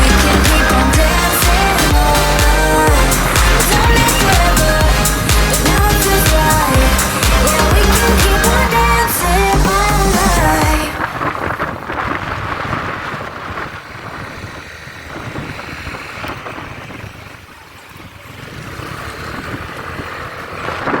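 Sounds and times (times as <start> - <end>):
background music: 0.0 - 11.0
wind buffeting microphone: 0.0 - 21.0.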